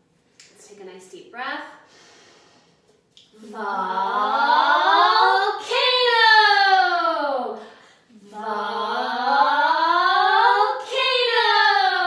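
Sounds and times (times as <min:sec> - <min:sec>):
woman and child chanting: 0:03.4 - 0:12.0.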